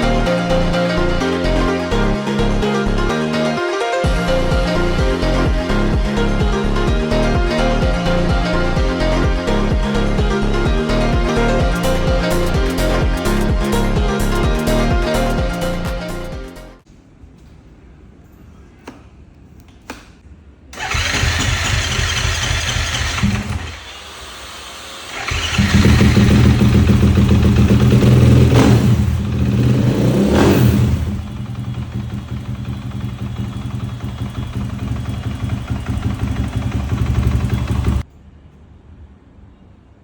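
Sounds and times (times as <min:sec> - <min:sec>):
motorcycle engine starting and revving: 0:04.0 - 0:14.5, 0:20.8 - 0:38.0.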